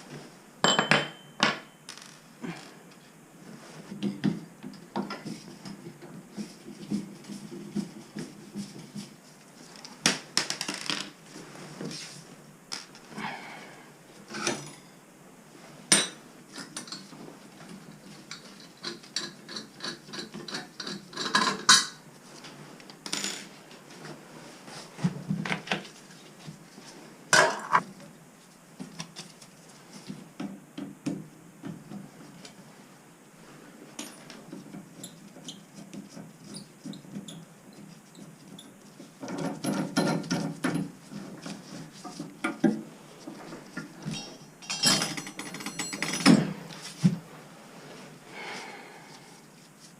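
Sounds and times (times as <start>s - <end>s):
metal tools clinking and scraping: 44.0s - 46.5s.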